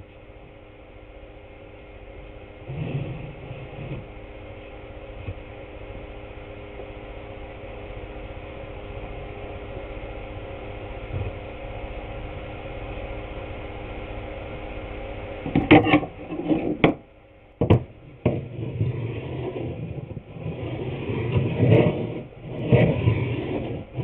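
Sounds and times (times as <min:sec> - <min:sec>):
wooden boards scraping: 0:15.5 - 0:17.0, 0:17.7 - 0:24.0.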